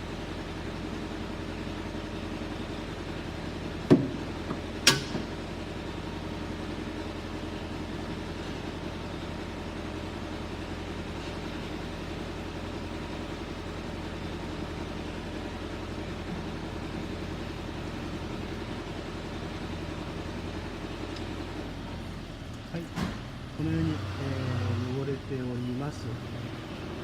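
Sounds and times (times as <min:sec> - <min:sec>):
low mechanical hum: 0:00.0 - 0:27.0
sharp knocks: 0:03.9 - 0:05.3.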